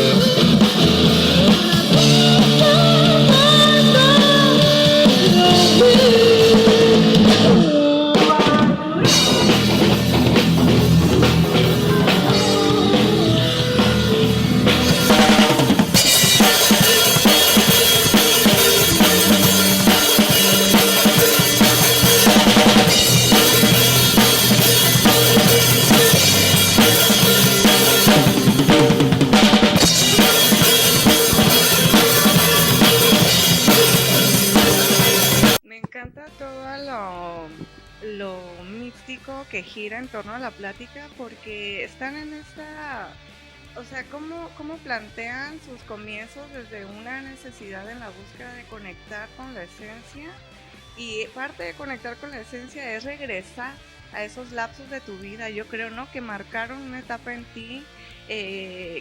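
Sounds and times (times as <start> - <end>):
rock band playing: 0.0 - 35.6
kick and snare drum beat: 9.3 - 35.6.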